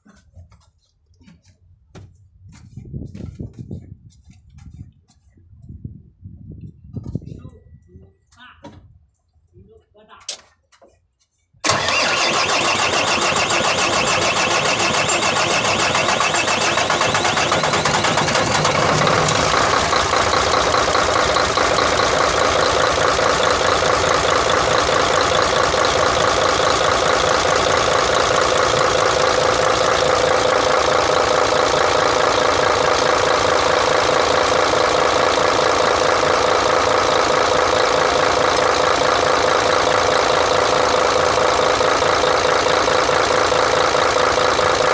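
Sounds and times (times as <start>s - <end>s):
diesel engine running: 11.6s - 44.9s.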